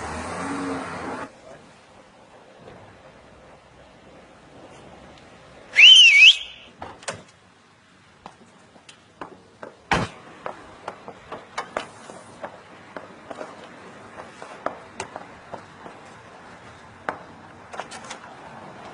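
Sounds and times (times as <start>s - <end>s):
loud rising whistle: 5.7s - 6.7s.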